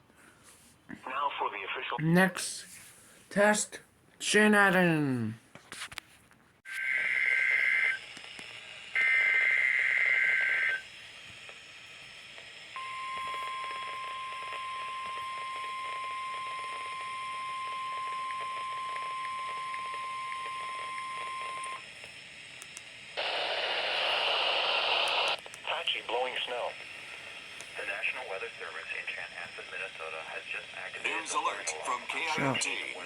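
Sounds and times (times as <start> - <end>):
steady warning alarm tone: 12.8 - 21.8.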